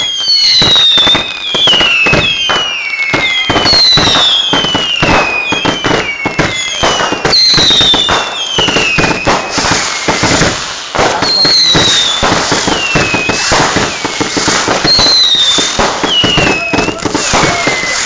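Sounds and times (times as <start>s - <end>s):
firework pops and bangs: 0.0s - 18.0s
whistling fireworks: 0.0s - 18.0s.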